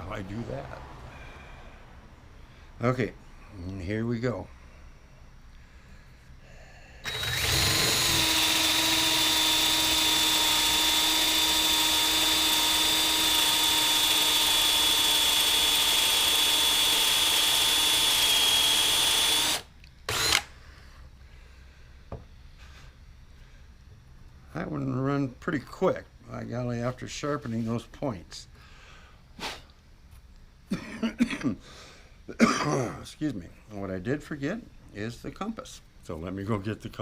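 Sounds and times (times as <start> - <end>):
power drill boring into wood: 7.0 - 20.5.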